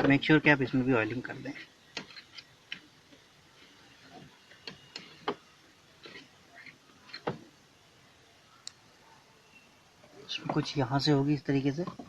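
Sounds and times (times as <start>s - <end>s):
light clicks and knocks: 11.8s - 12.0s.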